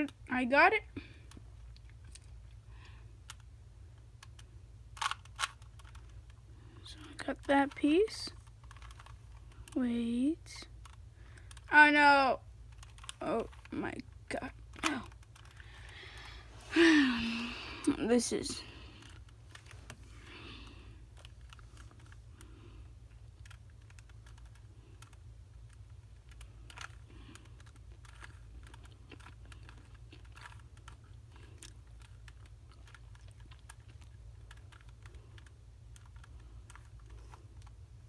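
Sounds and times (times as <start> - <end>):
low steady hum: 0.0 - 38.0
plastic puzzle cube clicks: 4.2 - 6.4, 8.4 - 9.8, 10.7 - 11.7, 12.7 - 13.7, 23.2 - 37.8.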